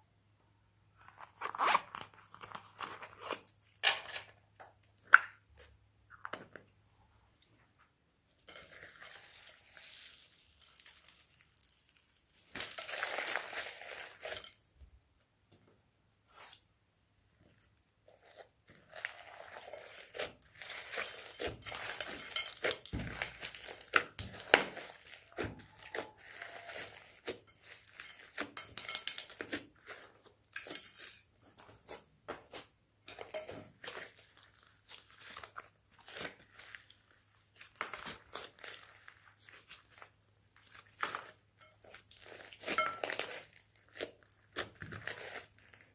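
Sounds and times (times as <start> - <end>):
hands squishing slime: 18.1 - 28.7, 31.6 - 45.9.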